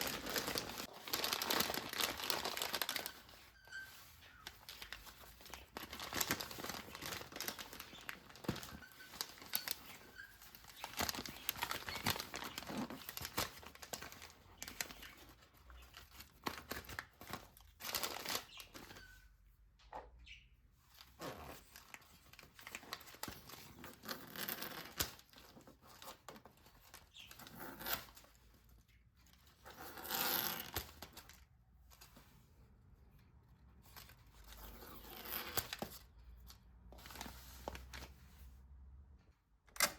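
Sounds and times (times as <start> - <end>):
packaging tearing: 0.0 - 3.3
packaging rustling and crinkling: 0.0 - 19.0.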